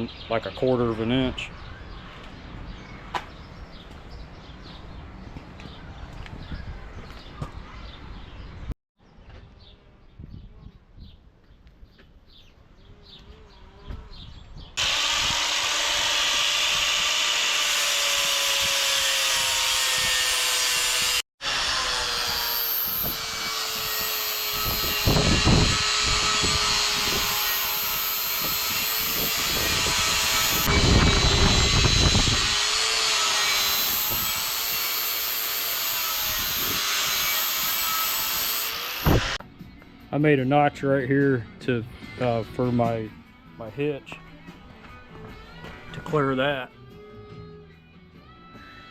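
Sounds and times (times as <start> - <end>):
angle grinder cutting steel: 14.8 - 39.4.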